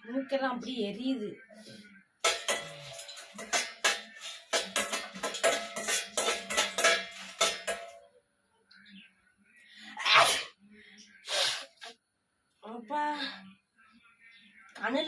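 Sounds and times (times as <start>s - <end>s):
metal spoon scraping frying pan: 2.2s - 8.0s
person sneezing: 10.0s - 10.5s.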